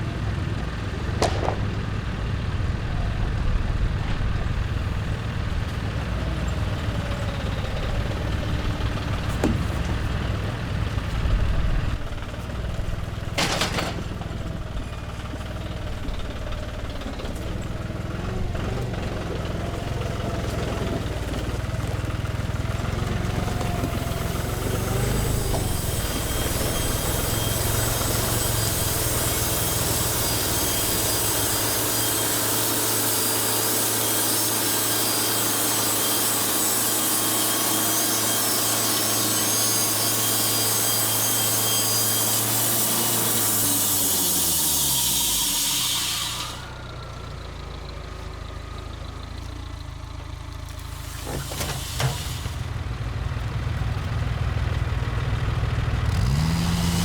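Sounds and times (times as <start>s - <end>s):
band sawmill cutting log: 0.0s - 47.8s, 50.6s - 57.0s
engine hum: 0.0s - 57.0s
single knock: 1.2s - 1.8s.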